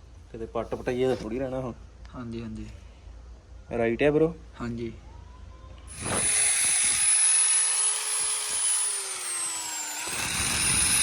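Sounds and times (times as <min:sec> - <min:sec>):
power tool motor whining: 0:05.9 - 0:11.0.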